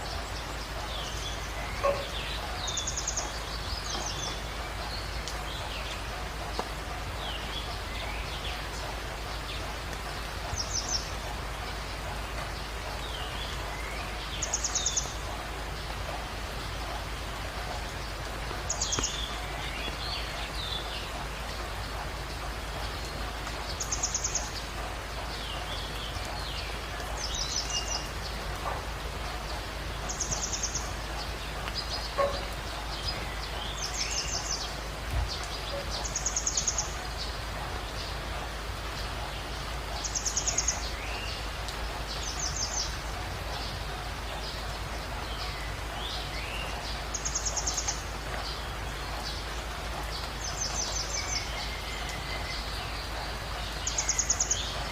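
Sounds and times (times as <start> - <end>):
other birds chirping softly: 0.0 - 8.8
steady background hiss: 0.0 - 54.9.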